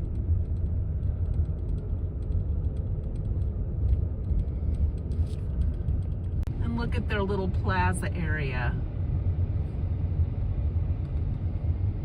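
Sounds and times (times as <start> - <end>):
faint ticks and rattles: 0.0 - 6.9
car road and engine rumble: 0.0 - 12.0.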